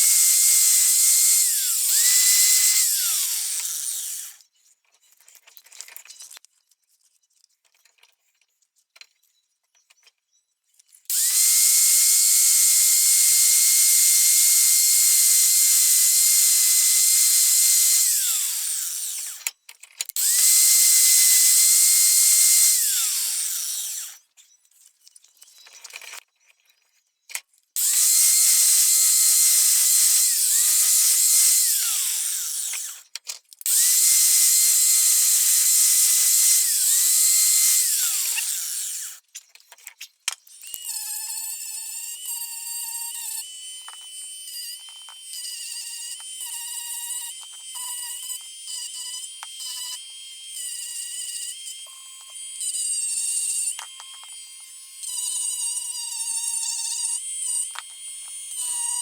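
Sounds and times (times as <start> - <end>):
high-speed power tool whining: 0.0 - 4.4, 11.1 - 19.5, 20.2 - 24.2, 27.8 - 33.1, 33.7 - 39.2, 40.5 - 59.0.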